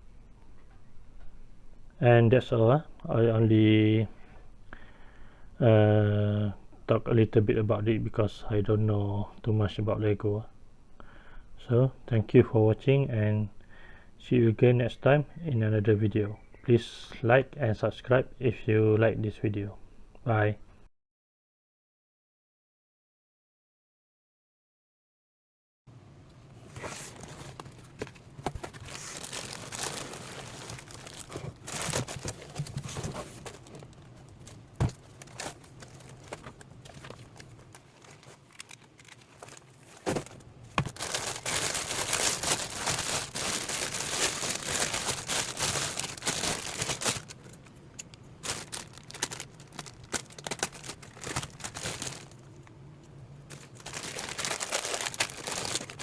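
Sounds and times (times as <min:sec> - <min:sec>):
material crinkling and rustling: 0:26.5 - 0:52.7, 0:53.4 - 0:56.0.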